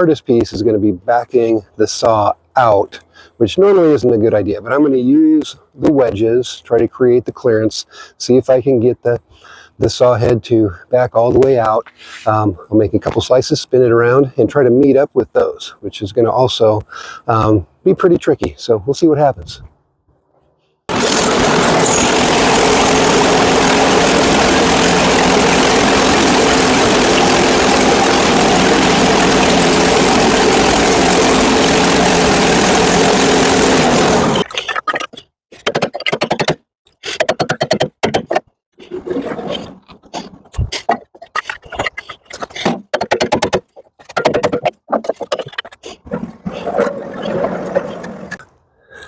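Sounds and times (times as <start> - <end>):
band sawmill cutting log: 20.9 - 34.4.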